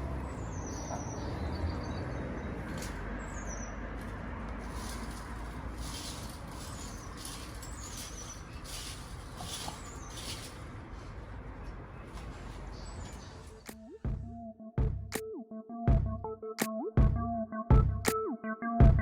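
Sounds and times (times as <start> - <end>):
bird chirping: 0.4 - 3.8
soft rustling: 4.0 - 13.6.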